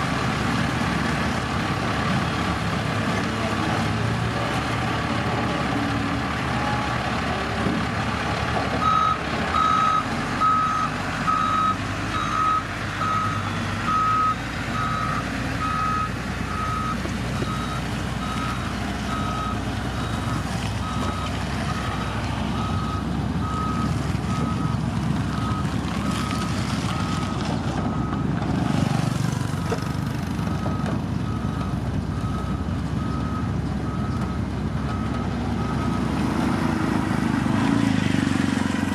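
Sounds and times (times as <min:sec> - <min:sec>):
diesel engine rumbling: 0:00.0 - 0:38.9
reversing alarm beeping: 0:08.8 - 0:22.0.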